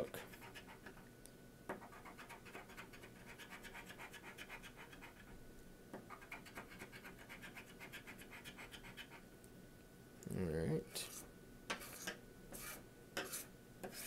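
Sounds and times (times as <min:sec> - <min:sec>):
scratch card being scratched: 0:01.8 - 0:05.3, 0:06.1 - 0:09.2, 0:11.1 - 0:14.0.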